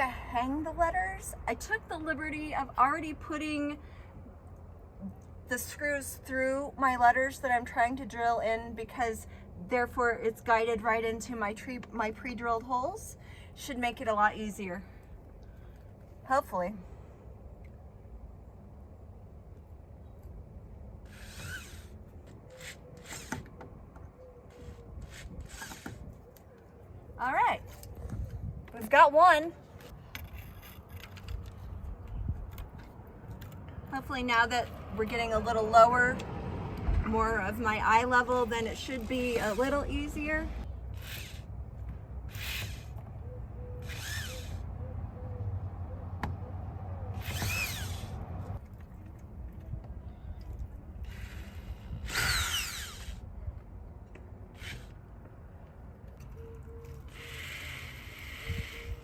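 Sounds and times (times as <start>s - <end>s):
power drill motor: 21.0s - 23.6s, 24.5s - 26.1s, 38.8s - 41.5s, 42.3s - 43.0s, 43.8s - 44.6s, 47.2s - 48.5s, 51.0s - 53.2s, 54.5s - 55.1s, 56.8s - 59.0s
screw scraping in brick: 29.8s - 31.7s.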